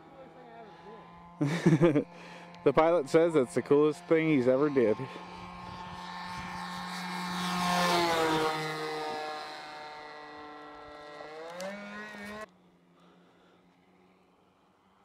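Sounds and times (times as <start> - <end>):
model airplane engine droning: 0.0 - 15.0.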